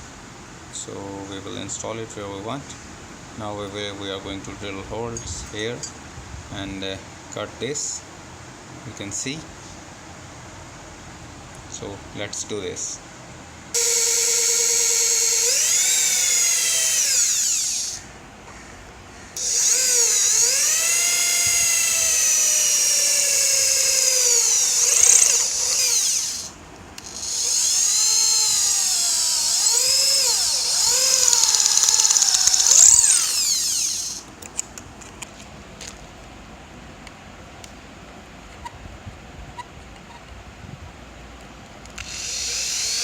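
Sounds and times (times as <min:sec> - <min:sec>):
electric drill boring into steel: 0:13.8 - 0:18.0, 0:19.4 - 0:34.3, 0:42.0 - 0:43.0.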